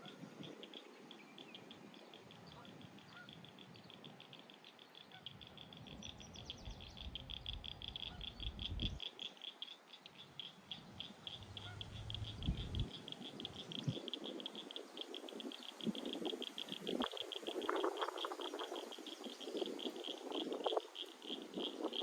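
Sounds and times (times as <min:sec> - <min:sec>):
animal chirps: 0:02.5 - 0:22.0
low rumble: 0:11.4 - 0:12.9.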